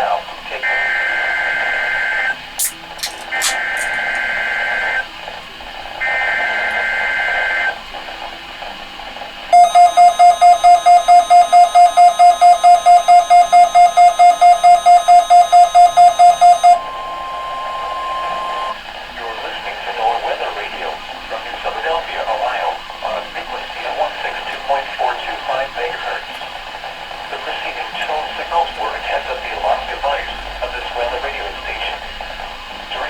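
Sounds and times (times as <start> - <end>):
radio static: 0.0 - 33.0
sharp clicks: 2.6 - 4.3
weather radio alarm beeps: 9.5 - 18.8
faint steady tone: 9.5 - 19.2.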